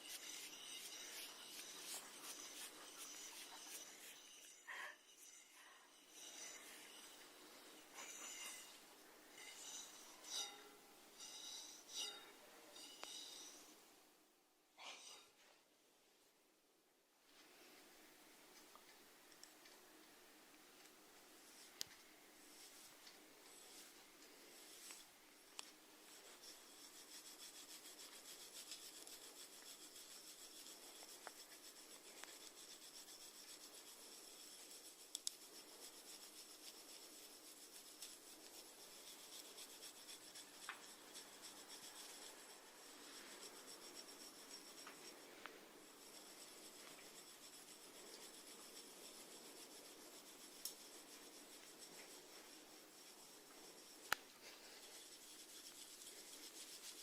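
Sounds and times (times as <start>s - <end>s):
snails rasping: 0.0s - 8.8s, 24.5s - 57.0s.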